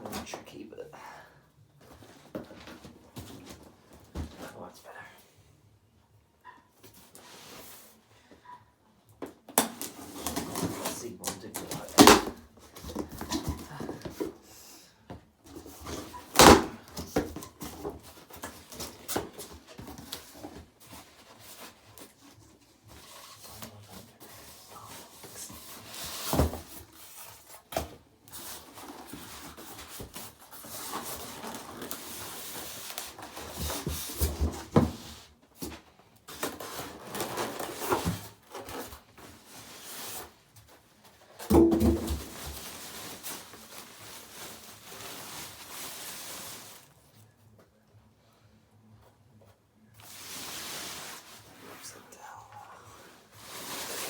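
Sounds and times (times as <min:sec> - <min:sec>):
packaging rustling and scraping: 0:09.6 - 0:14.5, 0:15.4 - 0:47.6, 0:48.8 - 0:54.0.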